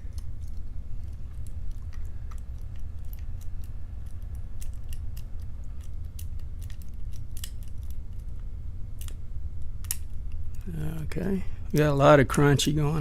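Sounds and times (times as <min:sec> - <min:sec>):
steady low hum: 0:00.0 - 0:13.0
metallic clicks and scrapes of lock pick: 0:03.1 - 0:08.3.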